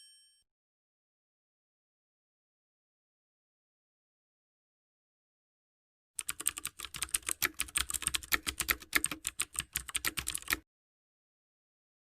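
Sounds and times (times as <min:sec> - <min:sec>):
fast sharp clicks: 0:06.2 - 0:10.6.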